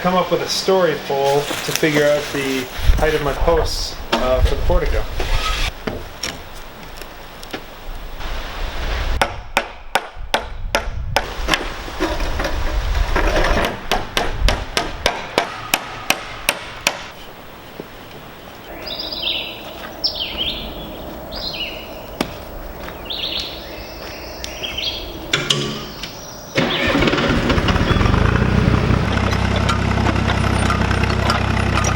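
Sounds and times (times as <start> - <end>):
hammer striking wood: 9.2 - 11.6, 13.9 - 17.1.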